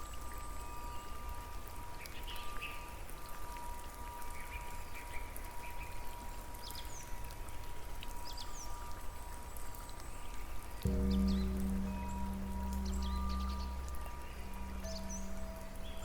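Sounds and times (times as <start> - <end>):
steady rain: 0.0 - 16.0
steady held tone: 10.8 - 16.0.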